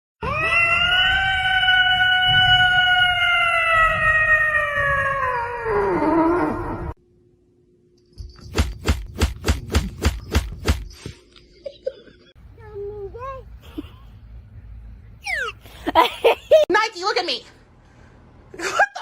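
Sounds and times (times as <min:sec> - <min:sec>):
animal howl: 0:00.2 - 0:06.9.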